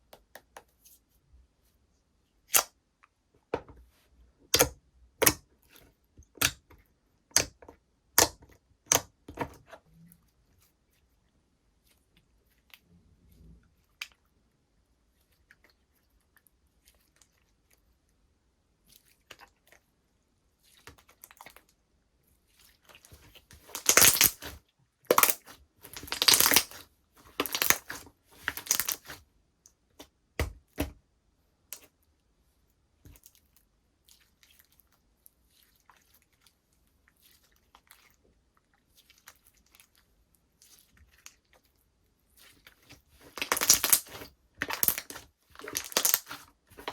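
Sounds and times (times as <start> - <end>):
slime clicking and popping: 23.7 - 24.5, 25.1 - 26.8, 27.4 - 29.1, 43.4 - 46.4.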